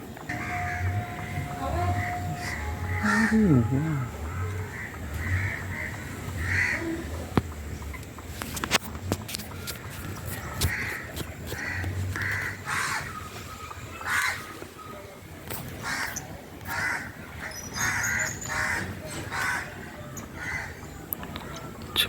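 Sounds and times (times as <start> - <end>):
crows cawing: 0.3 - 7.0, 10.4 - 13.2, 14.0 - 14.6, 15.8 - 19.8, 20.4 - 20.8.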